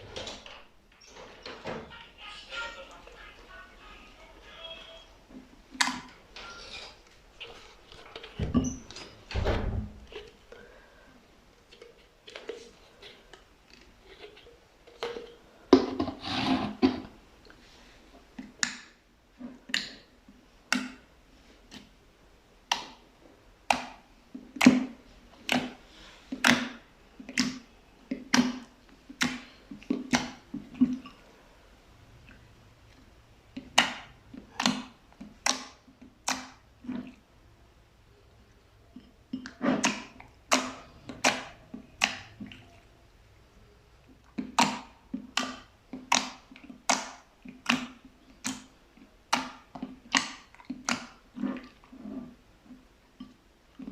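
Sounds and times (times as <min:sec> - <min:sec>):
slime squishing: 0:44.0 - 0:53.9.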